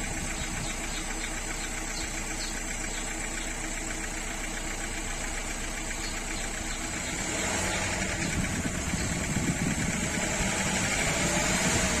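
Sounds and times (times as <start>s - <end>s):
car engine revving: 0.0s - 12.0s.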